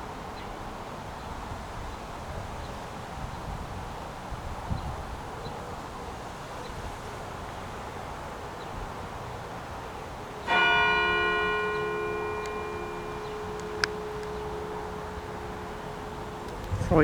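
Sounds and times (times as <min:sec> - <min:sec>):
church clock bell ringing: 0:10.4 - 0:17.0.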